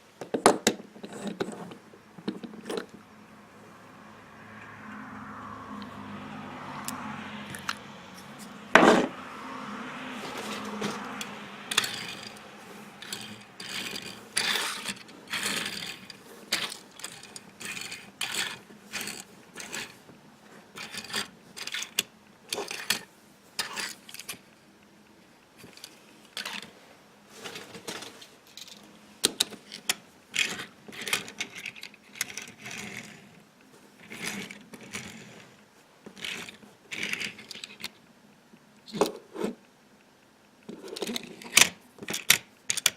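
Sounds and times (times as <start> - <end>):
toy cars clicking and clinking: 10.4 - 20.0, 20.7 - 24.5, 25.6 - 26.7, 27.4 - 33.4, 34.0 - 38.0, 40.6 - 42.9
rustling: 25.6 - 37.9.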